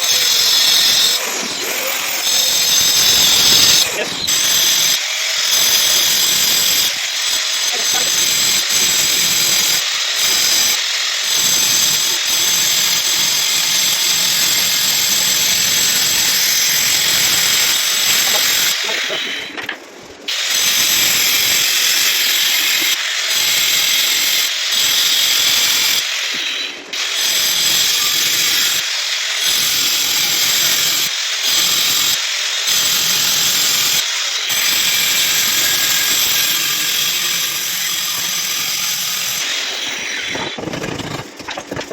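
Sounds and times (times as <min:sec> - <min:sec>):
power tool whining: 0:00.0 - 0:41.9.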